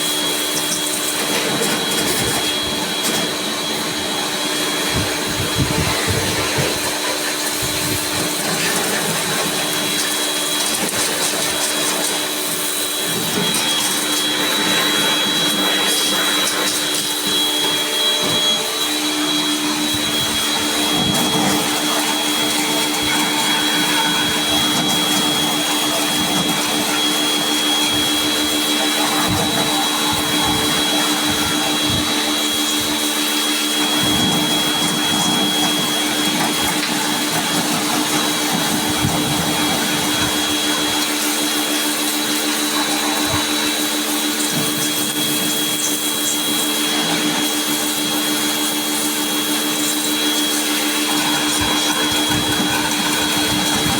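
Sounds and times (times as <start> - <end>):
electric motor humming and whining: 0.0 - 53.9.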